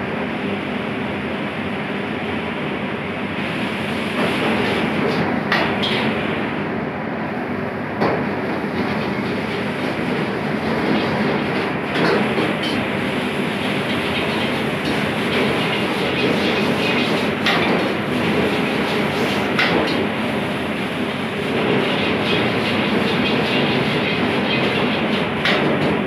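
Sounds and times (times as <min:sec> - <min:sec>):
gas burner roaring: 0:00.0 - 0:26.0
metal knocking on a wok: 0:21.6 - 0:26.0.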